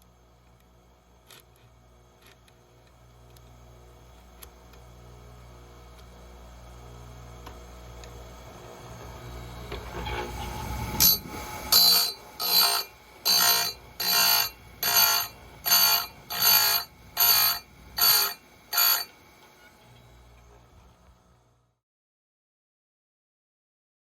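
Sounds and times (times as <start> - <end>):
grinder motor running: 7.6 - 20.3
grinding wheel on chain tooth: 11.0 - 19.1.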